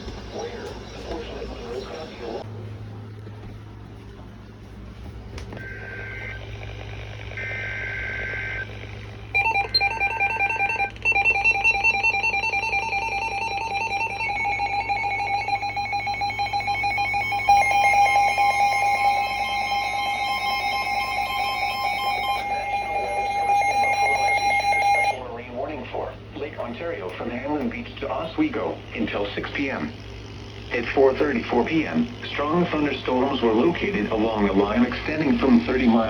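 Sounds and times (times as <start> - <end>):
screeching data tone bursts: 5.7 - 25.2.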